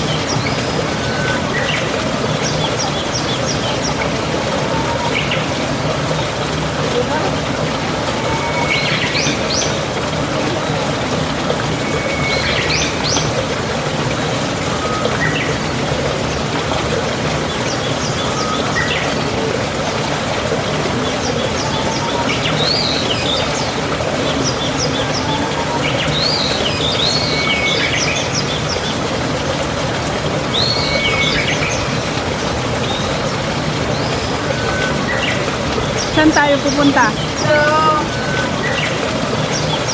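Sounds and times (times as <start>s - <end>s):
birds chirping: 30.5s - 39.9s
steady background hiss: 30.6s - 39.9s.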